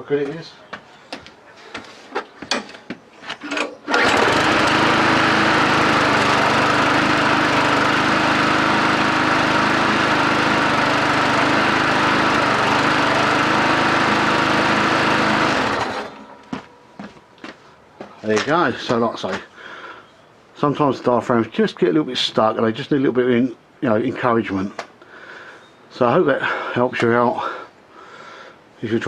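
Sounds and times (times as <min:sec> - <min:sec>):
lawnmower engine starting and running: 0:03.3 - 0:16.6.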